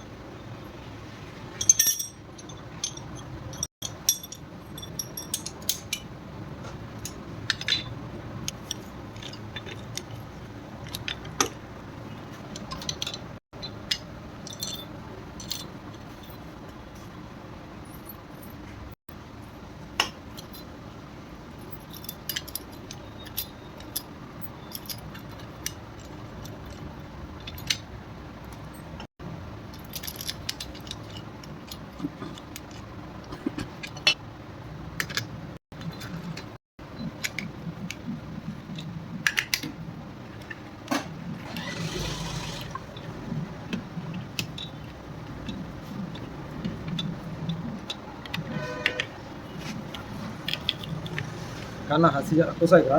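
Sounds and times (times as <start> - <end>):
metal tools clinking: 1.6 - 6.1, 14.4 - 16.4, 29.8 - 31.8.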